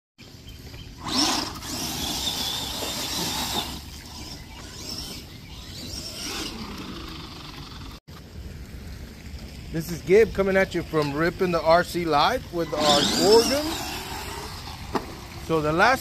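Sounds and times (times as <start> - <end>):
electric motor whining: 1.0 - 8.0, 12.6 - 15.8.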